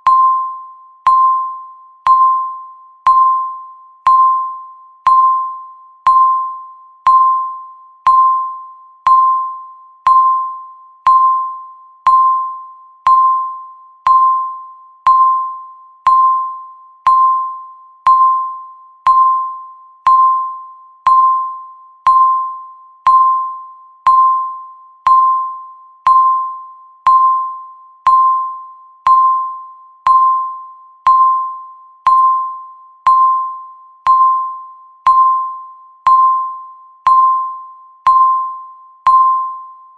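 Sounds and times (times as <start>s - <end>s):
countdown timer beeps: 0.0s - 39.9s.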